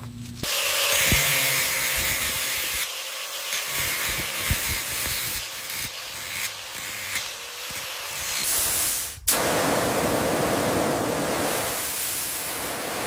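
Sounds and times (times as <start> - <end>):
spraying hiss: 8.2 - 13.0.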